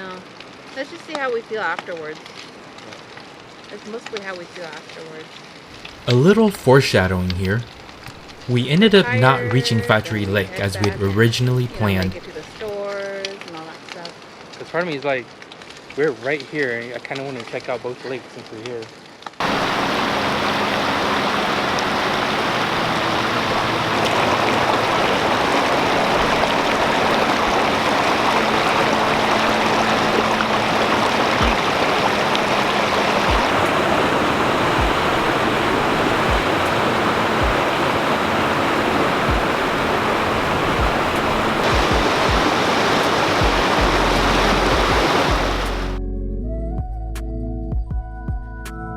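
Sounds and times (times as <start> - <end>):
creek water rushing: 5.7 - 12.8, 19.4 - 46.0
low thumps: 33.3 - 33.8, 34.6 - 36.7, 39.2 - 39.7, 40.5 - 42.6, 43.4 - 46.0.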